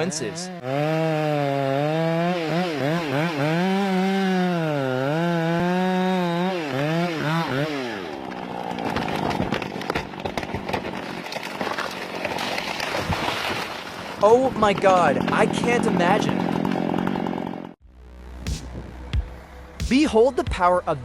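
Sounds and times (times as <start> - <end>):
chainsaw cutting at high revs: 0.0 - 11.2, 14.7 - 17.8
wood cracking and crackling: 5.1 - 17.6.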